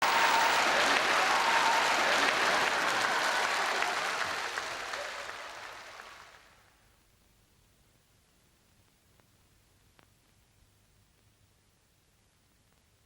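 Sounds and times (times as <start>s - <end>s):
audience applauding: 0.0s - 6.6s.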